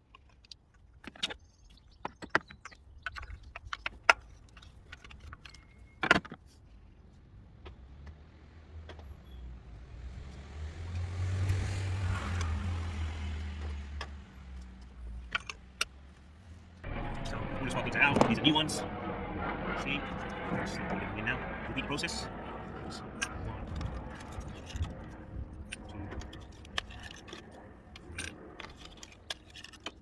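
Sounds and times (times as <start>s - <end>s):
passing vehicle rumble: 8.2s - 14.8s, 16.8s - 26.2s.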